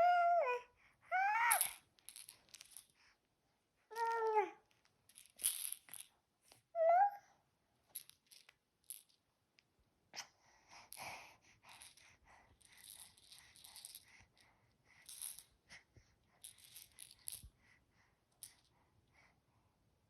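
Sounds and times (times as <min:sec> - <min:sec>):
toy rattling and crinkling: 0:01.4 - 0:03.1, 0:03.9 - 0:06.6, 0:07.9 - 0:09.2, 0:10.8 - 0:15.6, 0:16.2 - 0:17.6, 0:18.3 - 0:18.8.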